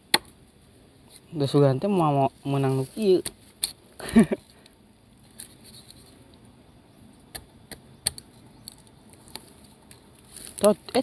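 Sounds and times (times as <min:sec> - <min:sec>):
blade chipping at wood: 0:07.2 - 0:11.0.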